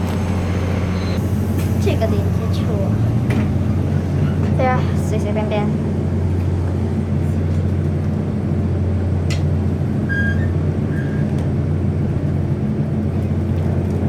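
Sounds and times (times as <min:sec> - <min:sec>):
engine and wheels on rails drone: 0:00.0 - 0:14.0
high squeak from gangway: 0:10.0 - 0:11.4.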